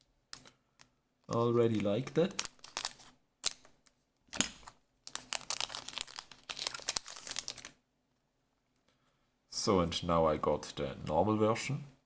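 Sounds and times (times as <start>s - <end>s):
foil wrapper crinkling: 2.4s - 3.6s, 5.1s - 7.8s.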